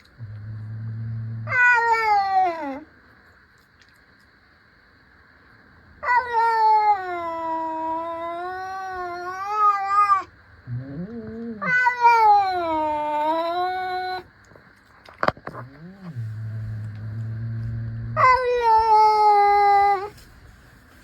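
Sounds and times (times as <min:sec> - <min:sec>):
cats yowling: 0:01.3 - 0:02.9, 0:06.0 - 0:14.3, 0:15.6 - 0:20.2.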